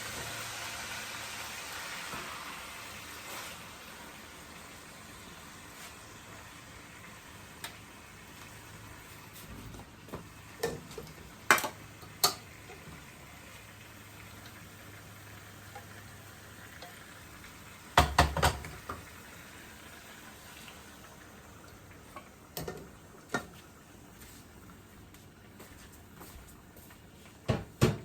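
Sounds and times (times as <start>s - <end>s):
utensil knocking on cooking pot: 18.0s - 18.7s.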